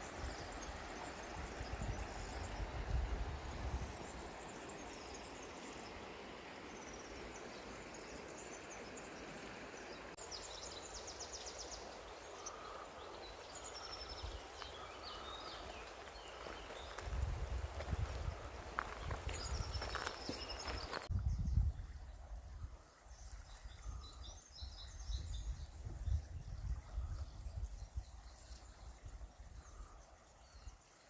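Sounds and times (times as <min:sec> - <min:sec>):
wind buffeting microphone: 0:00.0 - 0:04.5, 0:13.8 - 0:30.0
steady rushing hiss: 0:00.0 - 0:21.1
small birds chirping: 0:03.8 - 0:22.3, 0:22.9 - 0:31.0.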